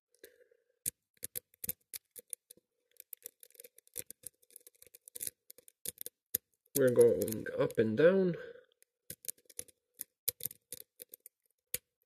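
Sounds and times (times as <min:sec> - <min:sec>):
lock pick clicking in padlock: 0:00.8 - 0:07.4, 0:09.1 - 0:11.9.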